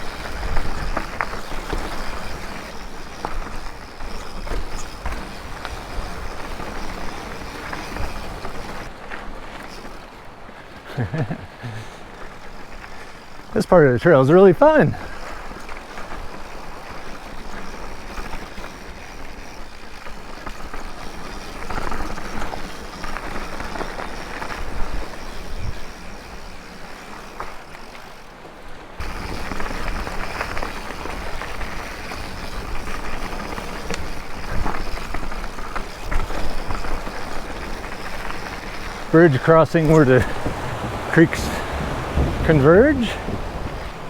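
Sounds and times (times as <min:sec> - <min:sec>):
bike rattling over bumps: 0:00.0 - 0:11.0, 0:11.6 - 0:44.0
bike tyres rumbling on dirt: 0:00.0 - 0:13.5, 0:15.0 - 0:44.0
wind on microphone: 0:39.8 - 0:44.0.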